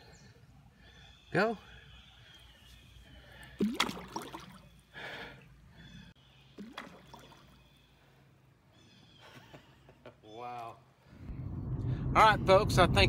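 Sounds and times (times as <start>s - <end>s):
creek water trickling: 2.0s - 8.4s
fish splashing into water: 3.4s - 4.8s, 6.5s - 7.7s.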